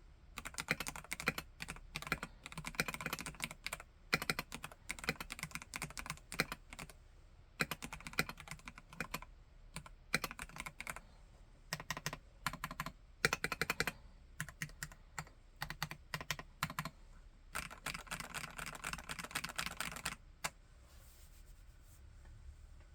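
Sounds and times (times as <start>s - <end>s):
mechanical keyboard typing: 0.4s - 7.0s, 7.6s - 11.0s, 11.7s - 16.9s, 17.6s - 20.5s.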